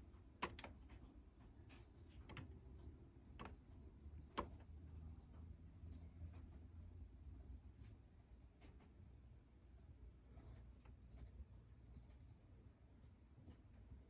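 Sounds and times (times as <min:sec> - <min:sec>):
fan switch clicking: 0:00.4 - 0:01.0, 0:02.1 - 0:04.8.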